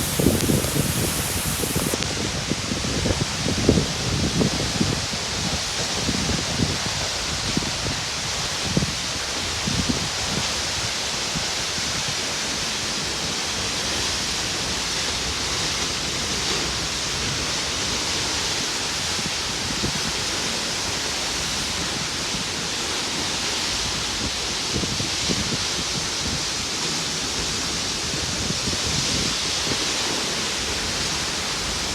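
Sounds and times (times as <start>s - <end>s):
waterfall rushing: 0.0s - 2.0s.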